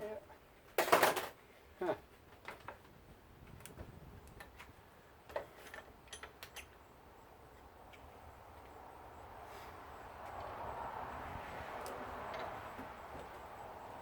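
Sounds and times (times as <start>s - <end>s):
clicks and taps of metal parts: 5.3s - 6.8s.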